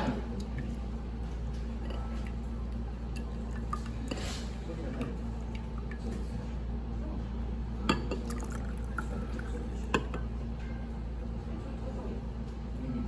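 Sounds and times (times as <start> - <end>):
steady low hum: 0.0 - 13.0
glassware clinking: 7.8 - 10.8.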